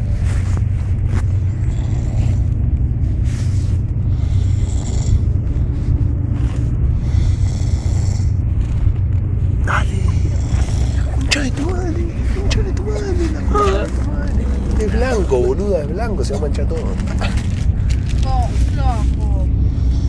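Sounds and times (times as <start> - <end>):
steady low rumble: 0.0 - 20.0
person snoring: 1.6 - 2.5, 4.1 - 5.4, 6.9 - 8.4, 9.7 - 15.4.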